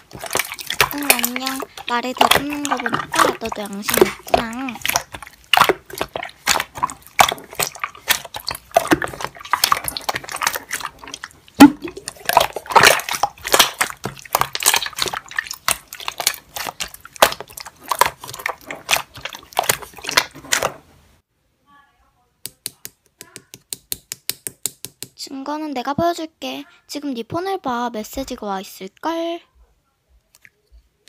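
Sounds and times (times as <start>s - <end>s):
slime squishing with wet pops: 0.0s - 20.9s.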